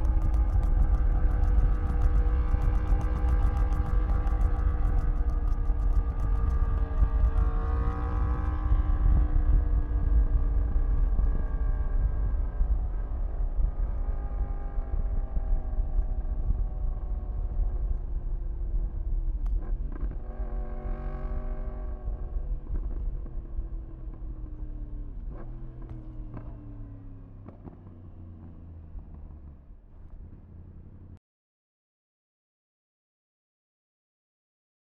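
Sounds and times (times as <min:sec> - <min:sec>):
motorcycle engine revving: 0:00.0 - 0:12.0, 0:19.5 - 0:31.1
deep wind rumble: 0:00.0 - 0:31.2.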